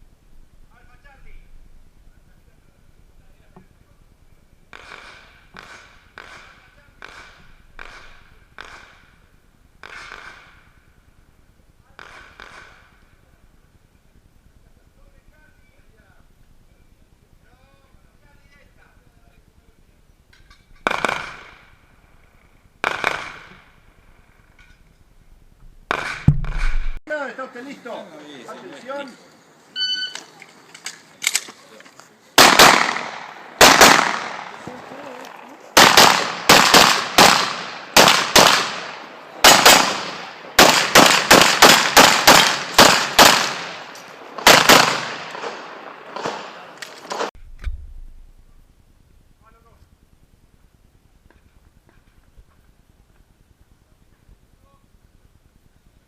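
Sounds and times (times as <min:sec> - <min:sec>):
gunshots with ringing echo: 0:20.8 - 0:21.8, 0:22.8 - 0:23.8, 0:32.4 - 0:34.6, 0:35.8 - 0:47.3
pistol firing rapidly: 0:20.9 - 0:21.5, 0:22.8 - 0:23.5, 0:32.4 - 0:34.6, 0:35.8 - 0:43.8, 0:44.4 - 0:45.5
heavy low thump: 0:26.2 - 0:27.0, 0:47.4 - 0:48.6.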